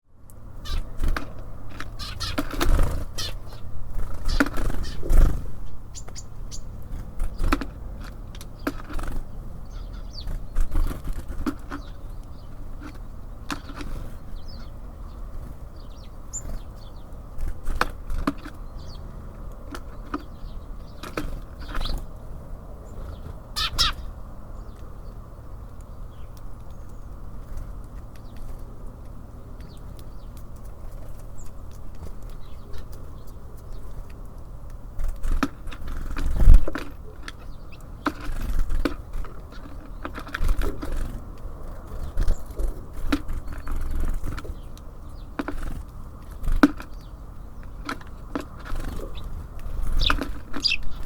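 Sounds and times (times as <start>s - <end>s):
birds pecking on wood: 0.3s - 51.0s
wings fluttering: 0.6s - 24.2s, 26.3s - 51.0s
high bird chirps: 1.9s - 7.5s, 8.6s - 10.9s, 22.9s - 24.8s, 48.8s - 51.0s.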